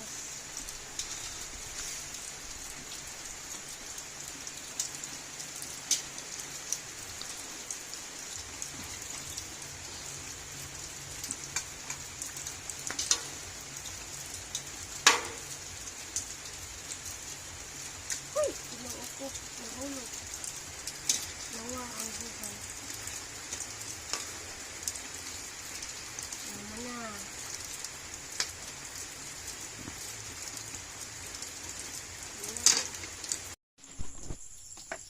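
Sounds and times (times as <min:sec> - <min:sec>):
steady rain hiss: 0:00.0 - 0:34.9
sharp drips or knocks: 0:14.5 - 0:15.6.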